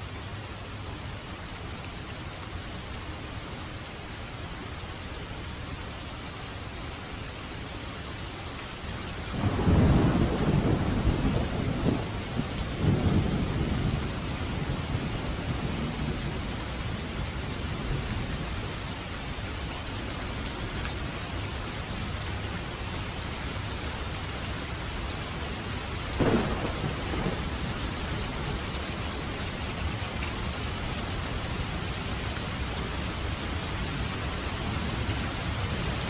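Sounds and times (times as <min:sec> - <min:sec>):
rain hissing: 0:00.0 - 0:36.0
thunder rumbling: 0:09.3 - 0:18.5, 0:26.1 - 0:36.0.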